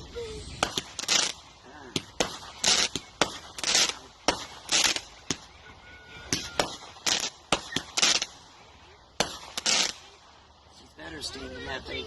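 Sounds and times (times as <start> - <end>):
fireworks bursts: 0.4 - 10.4
fireworks bangs: 0.6 - 5.6, 6.2 - 8.5, 9.2 - 10.2.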